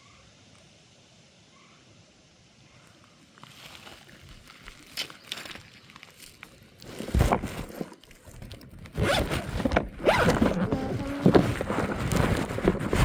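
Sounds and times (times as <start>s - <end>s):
faint gear whine: 7.4s - 13.0s.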